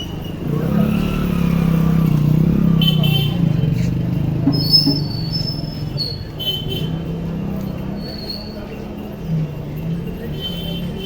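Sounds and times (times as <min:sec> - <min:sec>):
vehicle engines running: 0:00.0 - 0:11.0.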